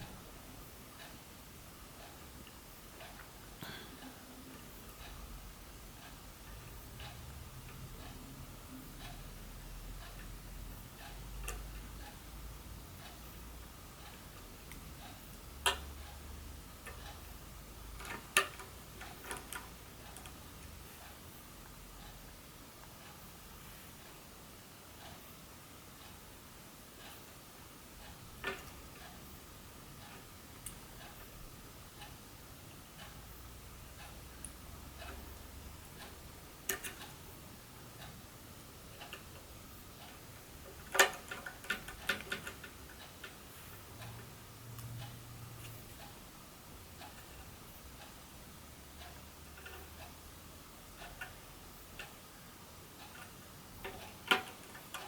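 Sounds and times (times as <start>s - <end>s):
small tools clicking and tapping: 17.9s - 20.8s, 36.6s - 37.2s, 40.1s - 43.4s, 53.1s - 55.0s.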